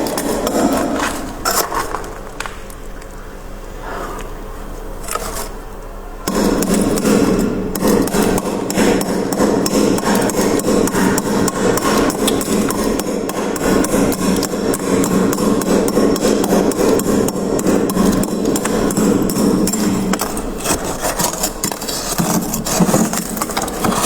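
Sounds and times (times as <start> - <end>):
scraper chipping at frost: 17.8 - 24.0.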